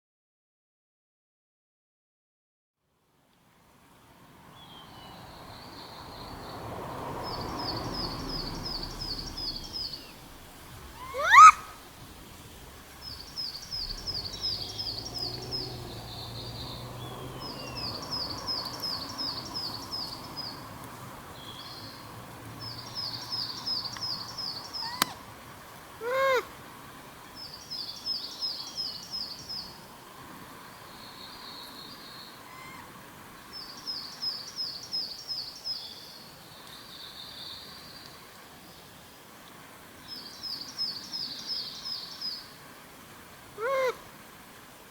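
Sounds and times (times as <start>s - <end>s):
small bird chirping: 7.3s - 11.8s, 13.0s - 20.6s
monkey coo call: 10.8s - 11.9s, 24.8s - 25.2s, 26.0s - 26.5s, 32.4s - 32.9s, 43.6s - 44.0s.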